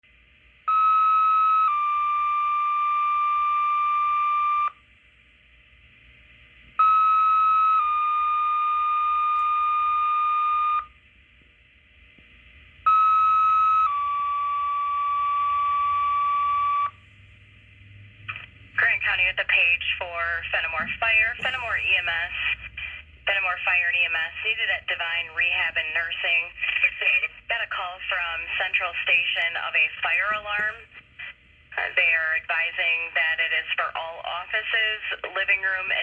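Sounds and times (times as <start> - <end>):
radio hiss: 18.3 - 36.0.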